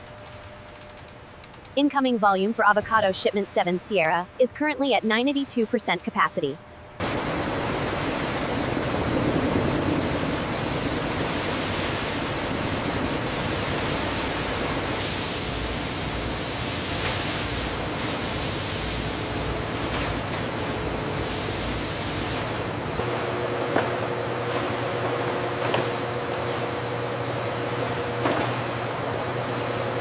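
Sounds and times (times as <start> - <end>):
machinery rushing noise: 7.0 - 17.1.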